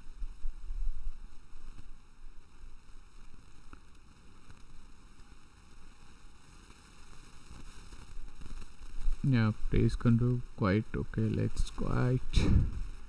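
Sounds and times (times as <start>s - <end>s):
microphone hiss and rumble: 7.6s - 13.0s.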